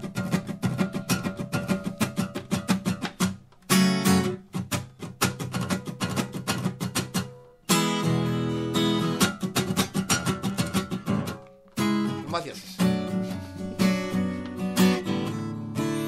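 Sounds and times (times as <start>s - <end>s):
acoustic guitar strumming: 0.0s - 16.0s.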